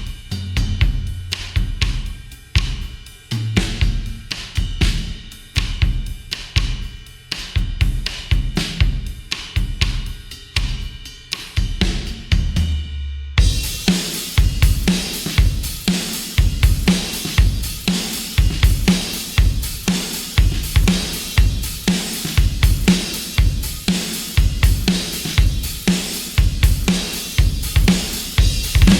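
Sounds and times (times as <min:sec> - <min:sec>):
rock drum kit groove: 0:00.0 - 0:28.9.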